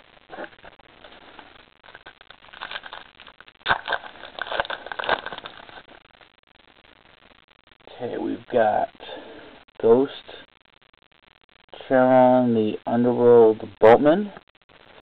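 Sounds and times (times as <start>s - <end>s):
foil pack crinkling and tearing: 0.3s - 6.0s.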